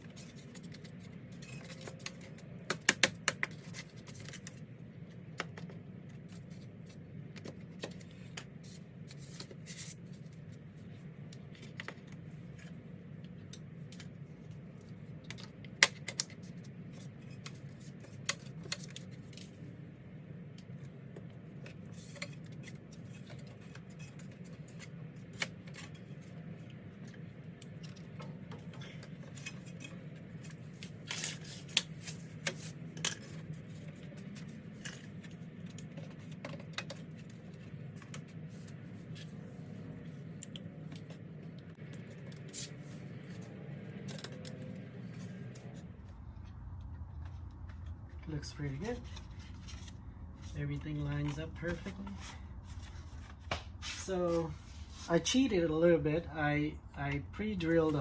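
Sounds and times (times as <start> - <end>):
tools and parts clinking: 0.0 - 6.7, 27.0 - 39.4
steady low hum: 0.0 - 58.0.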